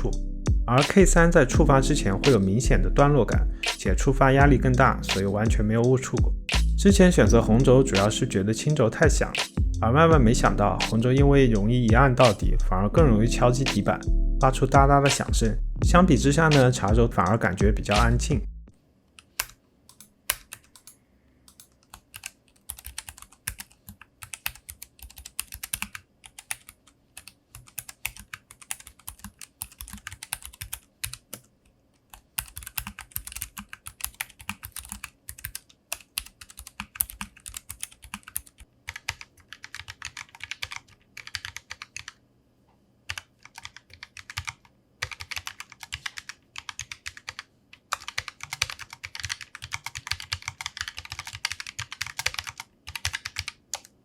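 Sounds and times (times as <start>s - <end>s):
mechanical keyboard typing: 19.3s - 31.5s, 32.1s - 42.2s, 43.1s - 54.0s.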